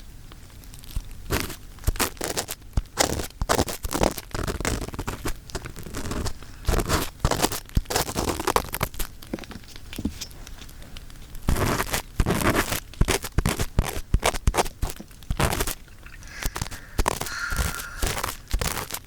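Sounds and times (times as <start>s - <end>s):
earpick scratching microphone: 1.3s - 9.0s, 11.5s - 19.0s.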